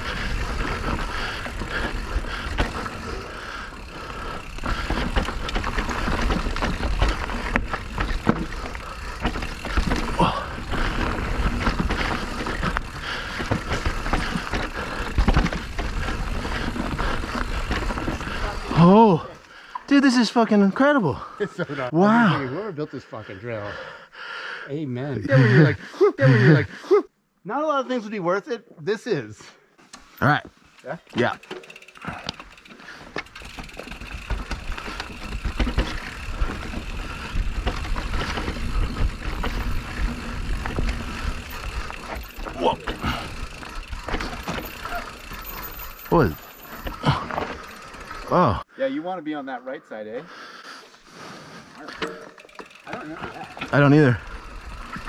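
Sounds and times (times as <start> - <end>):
bike tyre noise: 0.0 - 19.8, 29.9 - 48.6, 51.0 - 55.0
bike knocks and rattles: 3.8 - 18.4, 30.4 - 46.1, 52.0 - 53.9.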